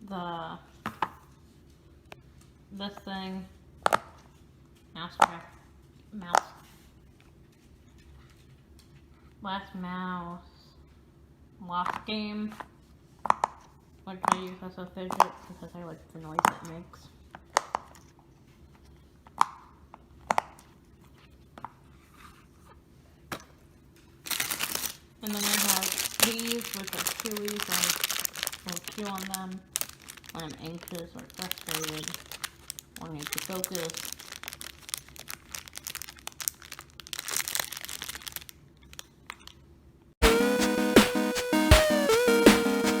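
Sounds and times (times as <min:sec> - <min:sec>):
crinkling handling noise: 0:23.6 - 0:39.6
music: 0:40.2 - 0:43.0.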